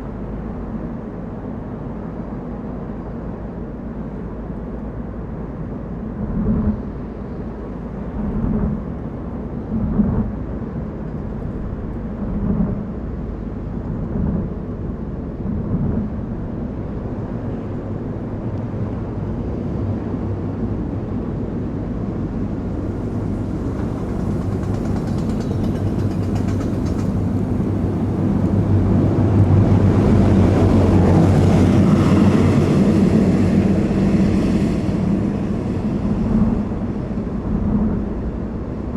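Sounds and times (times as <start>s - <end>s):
car engine and road noise: 21.8s - 38.9s.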